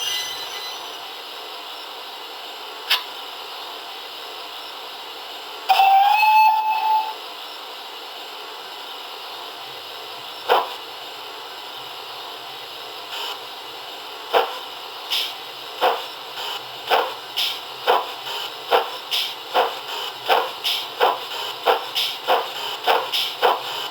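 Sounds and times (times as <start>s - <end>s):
steam engine whistle: 5.7s - 7.2s
steady steam hiss: 7.3s - 23.9s
steam exhaust chuffs: 14.3s - 23.9s.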